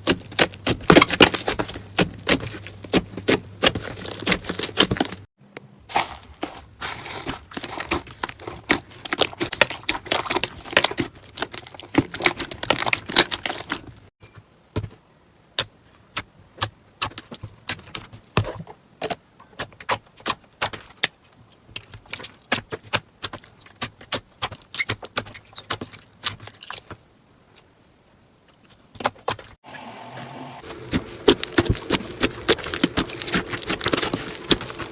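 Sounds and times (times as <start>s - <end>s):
slime crackling and popping: 30.7s - 34.9s.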